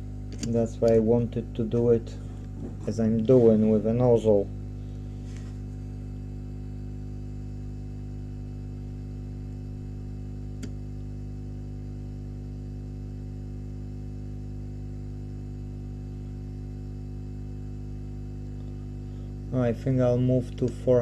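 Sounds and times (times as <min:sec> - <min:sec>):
electrical mains hum: 0:00.0 - 0:21.0.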